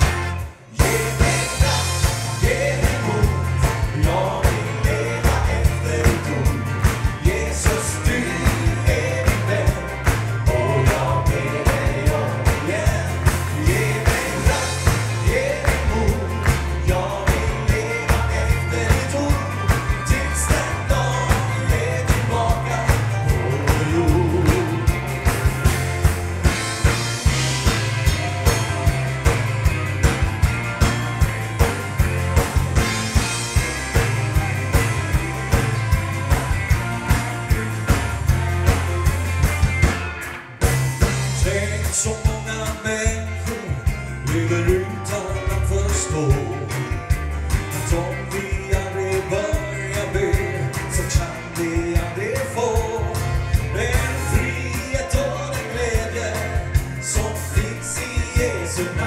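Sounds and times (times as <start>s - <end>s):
drum kit beat: 0.0s - 59.0s
person singing: 0.6s - 25.2s, 41.3s - 46.9s, 47.8s - 59.0s.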